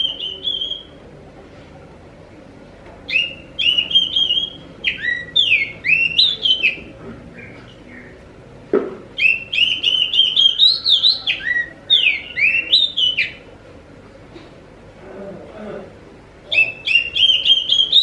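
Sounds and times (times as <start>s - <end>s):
bird singing whistled notes: 0.0s - 1.0s, 3.1s - 8.2s, 9.2s - 13.4s, 16.5s - 18.0s.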